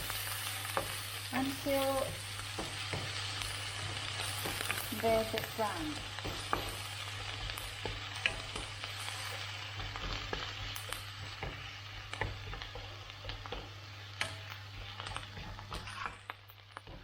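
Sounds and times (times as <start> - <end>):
onion sizzling in hot oil: 0.0 - 17.0
utensil scraping a pan: 14.8 - 17.0.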